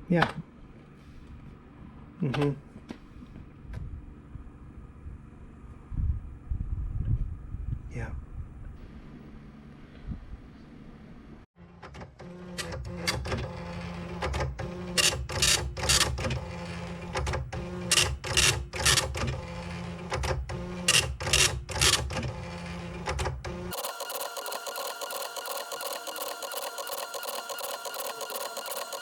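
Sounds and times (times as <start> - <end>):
printer motor hum: 11.6 - 29.0.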